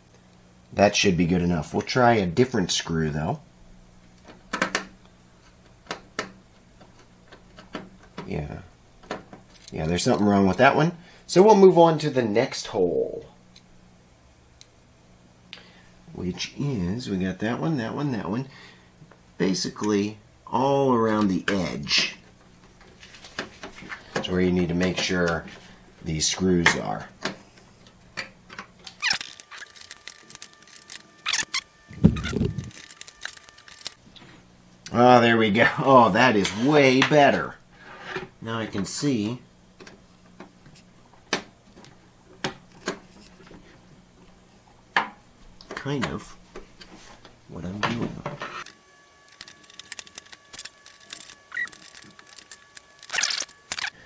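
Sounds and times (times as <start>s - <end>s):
screwdriver clicking on metal: 29.0s - 34.0s, 48.6s - 54.0s
short squeaks: 29.0s - 34.0s, 48.6s - 54.0s.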